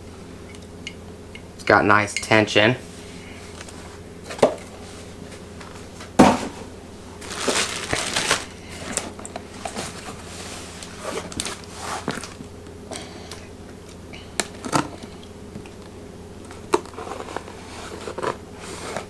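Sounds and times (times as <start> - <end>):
plastic bag rustling: 2.9 - 12.5.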